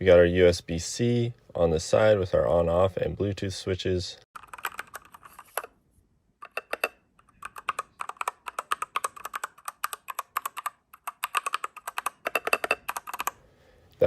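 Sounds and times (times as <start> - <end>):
mechanical keyboard typing: 4.4 - 5.7, 6.4 - 13.4.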